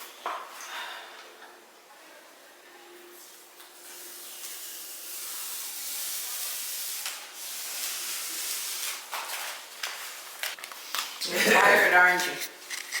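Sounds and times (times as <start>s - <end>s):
steady hiss: 3.1s - 11.2s.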